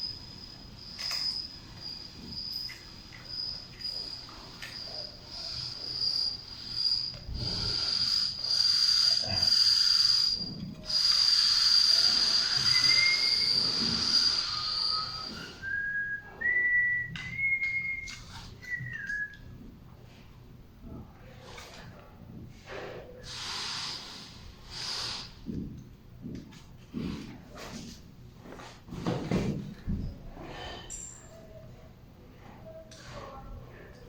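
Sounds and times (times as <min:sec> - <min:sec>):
hiss: 0:03.8 - 0:15.8, 0:22.7 - 0:25.5
person whistling: 0:11.1 - 0:19.5.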